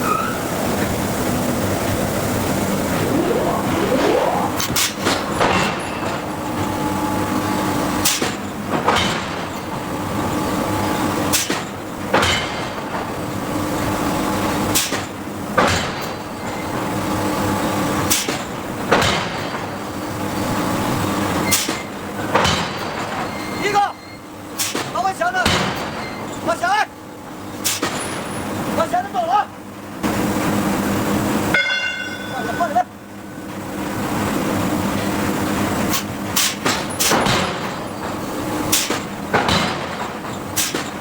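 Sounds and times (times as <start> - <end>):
machinery humming: 0.0 - 8.0
forging hammer striking steel: 31.6 - 32.6.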